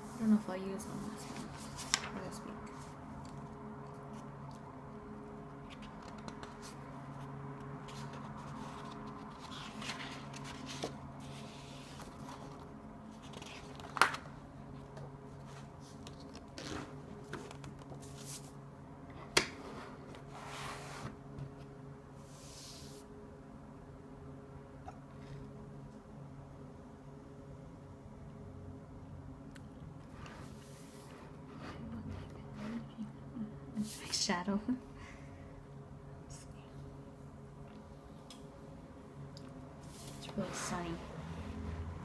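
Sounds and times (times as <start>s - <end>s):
steady low hum: 0.0s - 42.0s
paper rustling: 1.0s - 3.0s, 7.8s - 14.4s.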